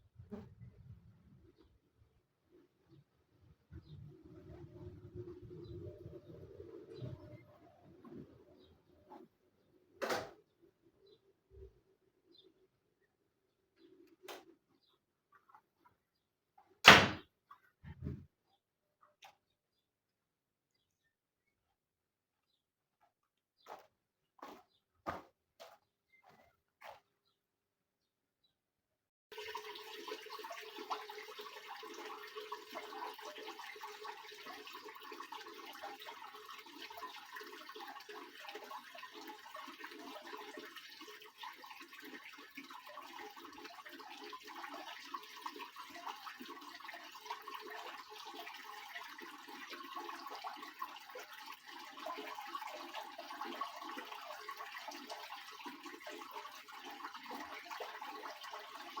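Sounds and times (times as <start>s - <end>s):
water rushing in washing machine: 2.9s - 9.4s, 29.3s - 59.0s.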